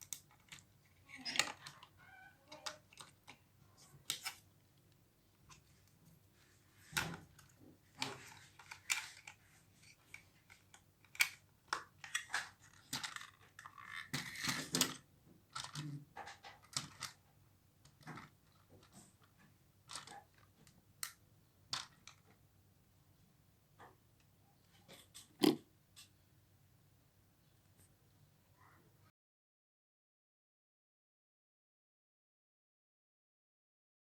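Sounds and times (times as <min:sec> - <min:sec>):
plastic parts clicking: 0:00.0 - 0:01.9, 0:02.5 - 0:03.4, 0:06.9 - 0:17.2, 0:17.8 - 0:22.4.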